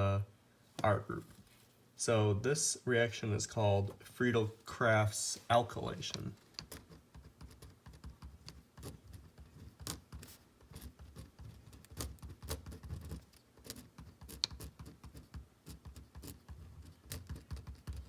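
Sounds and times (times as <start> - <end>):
pen clicking and tapping: 6.5 - 18.0.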